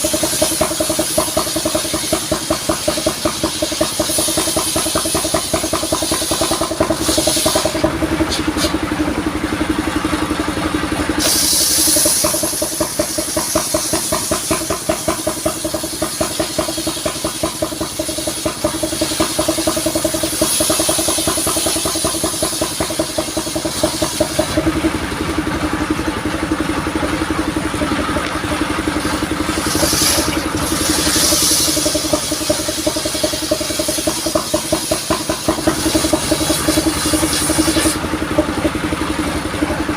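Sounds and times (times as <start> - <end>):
sawmill engine running: 0.0 - 39.9.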